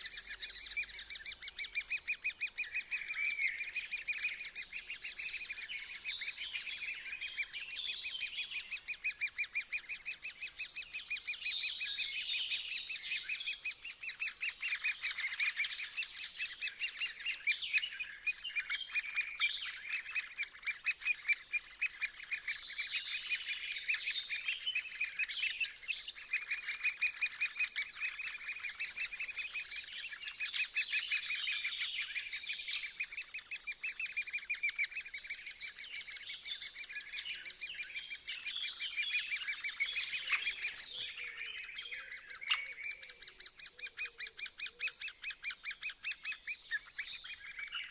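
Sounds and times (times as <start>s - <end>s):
woodpeckers chirping rapidly: 0.0s - 47.9s.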